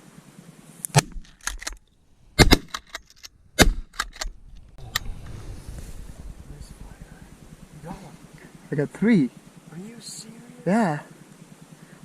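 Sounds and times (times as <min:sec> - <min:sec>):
loud shotgun shots: 0:02.4 - 0:02.8, 0:03.5 - 0:04.4.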